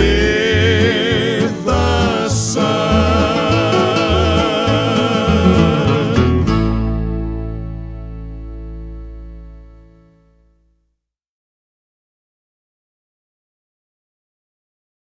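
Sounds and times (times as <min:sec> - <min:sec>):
person singing with vibrato: 0:00.0 - 0:07.0
country band playing: 0:00.0 - 0:10.2.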